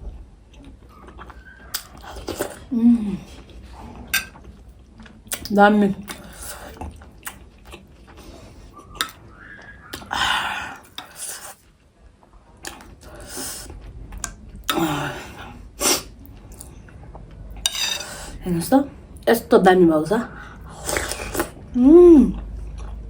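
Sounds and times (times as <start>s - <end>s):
eating sounds: 0.6s - 4.4s, 5.0s - 11.7s, 12.6s - 17.0s, 20.3s - 23.0s.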